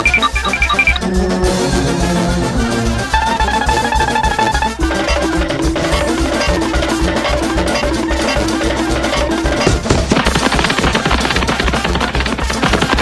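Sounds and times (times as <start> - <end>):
repeating melody of short notes: 0.0 - 9.9
steady drum beat: 0.0 - 13.0.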